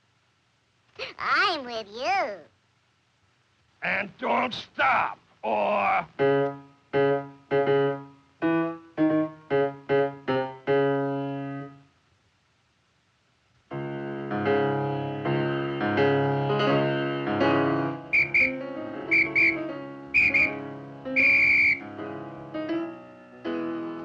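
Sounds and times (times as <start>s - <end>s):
piano chords: 6.2s - 11.8s, 13.7s - 24.0s
fast piano music: 13.8s - 24.0s.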